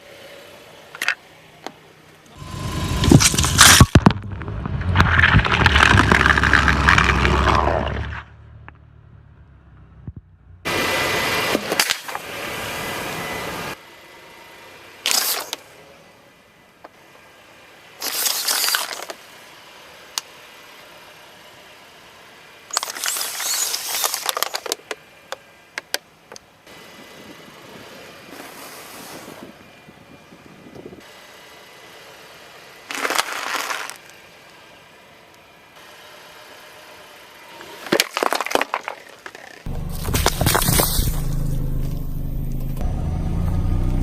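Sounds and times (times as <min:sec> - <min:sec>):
tyres crushing brittle objects: 0:02.9 - 0:08.2, 0:22.7 - 0:24.9, 0:32.9 - 0:34.1, 0:37.8 - 0:41.3.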